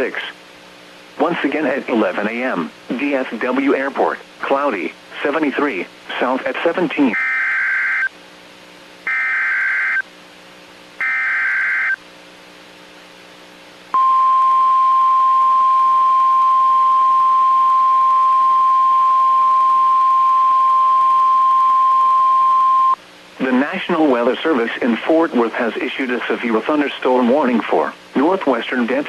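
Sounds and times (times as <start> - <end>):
buzzy data squawks: 7.1 - 8.1, 9.1 - 10.0, 11.0 - 12.0
steady warning alarm tone: 7.1 - 8.1, 9.1 - 10.0, 11.0 - 12.0, 14.0 - 23.0.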